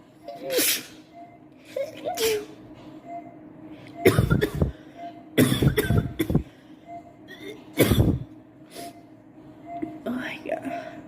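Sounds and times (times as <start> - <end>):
person sneezing: 0.4 - 1.0.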